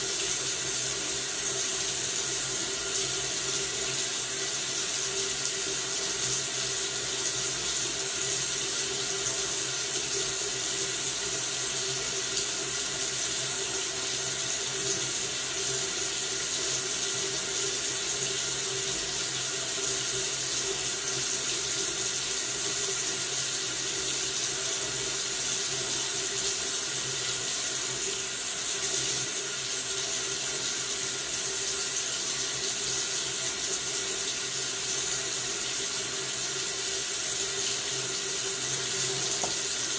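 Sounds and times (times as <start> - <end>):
faucet running into sink: 0.0 - 39.9.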